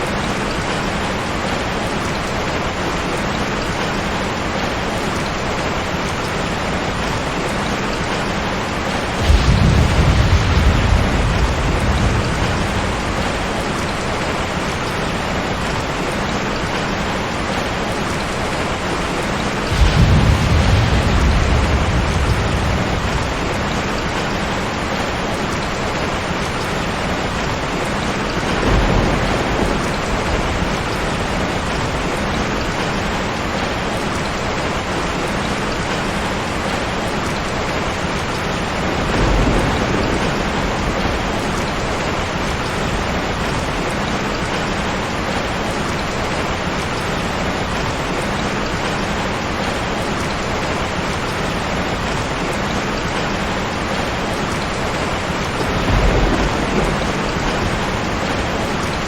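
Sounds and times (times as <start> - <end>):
steady rain falling: 0.0 - 59.0
low rumbles of thunder: 8.8 - 16.1, 18.2 - 34.5, 38.1 - 45.9, 53.1 - 59.0.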